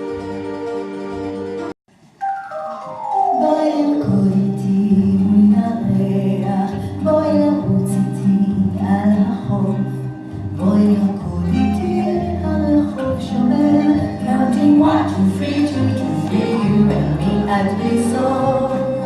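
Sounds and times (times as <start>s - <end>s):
person singing: 3.1s - 19.0s
music with bass line: 4.0s - 19.0s.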